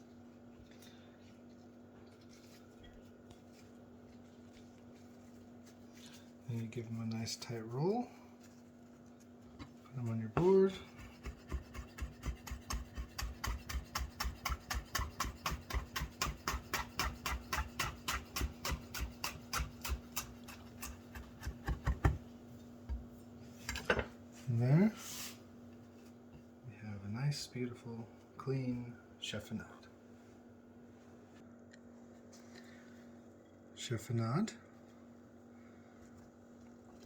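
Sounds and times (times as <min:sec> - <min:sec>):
faint steady hum: 0:00.0 - 0:37.0.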